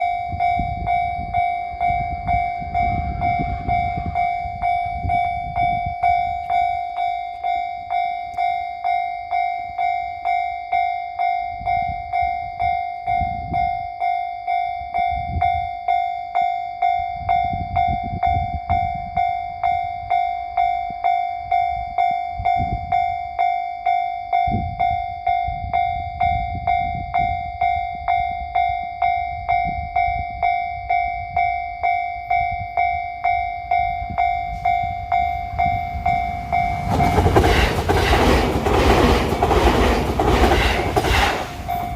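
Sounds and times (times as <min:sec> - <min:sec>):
level-crossing warning bell: 0:00.0 - 0:41.9.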